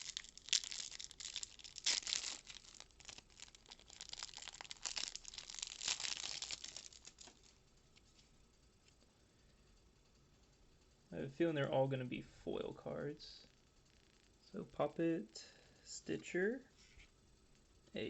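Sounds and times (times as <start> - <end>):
plastic wrapper tearing and crinkling: 0.0 - 7.5.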